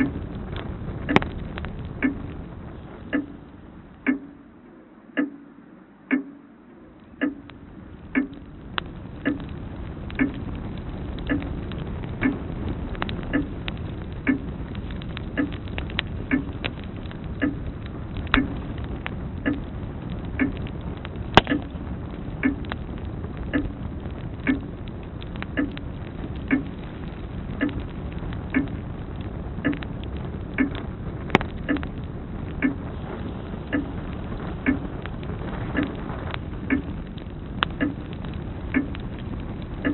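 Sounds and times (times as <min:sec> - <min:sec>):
fire popping: 0:00.0 - 0:04.5, 0:06.9 - 0:39.9
wood fire crackling: 0:00.0 - 0:39.9
clock ticking: 0:01.0 - 0:02.4, 0:03.1 - 0:10.6, 0:11.2 - 0:19.7, 0:20.3 - 0:20.8, 0:21.4 - 0:21.8, 0:22.4 - 0:22.8, 0:23.4 - 0:26.8, 0:27.5 - 0:27.9, 0:28.5 - 0:28.9, 0:29.6 - 0:29.9, 0:30.5 - 0:32.9, 0:33.6 - 0:34.0, 0:34.6 - 0:34.9, 0:35.6 - 0:39.9.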